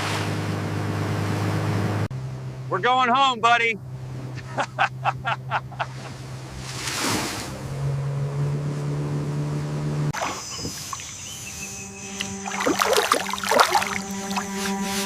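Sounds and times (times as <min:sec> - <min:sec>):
water splashes: 0:00.0 - 0:02.7, 0:05.8 - 0:08.1, 0:10.1 - 0:11.1, 0:12.2 - 0:14.8
background music drone: 0:11.6 - 0:15.0
water sloshing: 0:12.1 - 0:15.0.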